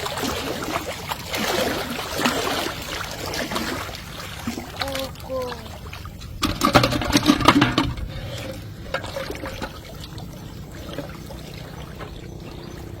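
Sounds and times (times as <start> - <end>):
river water trickling: 0.0 - 13.0.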